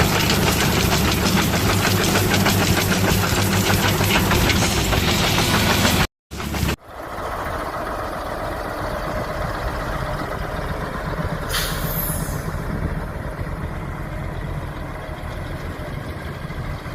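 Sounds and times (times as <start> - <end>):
truck engine running: 0.0 - 16.9
air brake hiss: 11.5 - 12.6.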